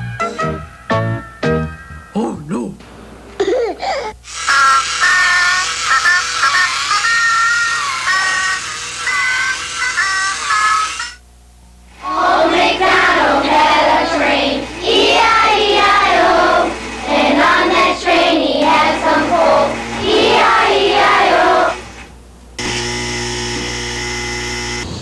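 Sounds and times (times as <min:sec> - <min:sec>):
children singing: 0:12.0 - 0:22.0.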